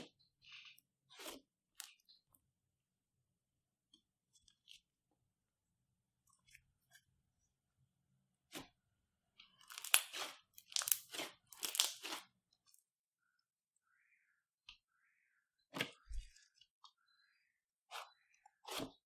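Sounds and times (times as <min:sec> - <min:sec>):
crunchy slime squelches: 0:09.4 - 0:12.8.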